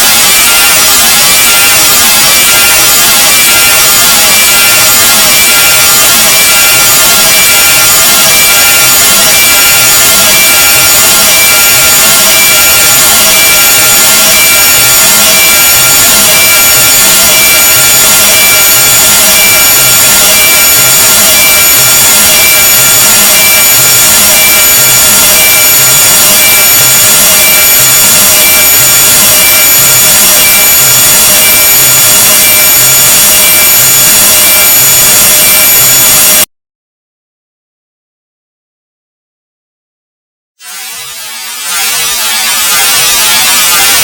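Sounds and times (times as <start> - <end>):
piercing steady tones: 0.0 - 36.5, 40.6 - 44.0
dense loud hiss: 40.6 - 44.0.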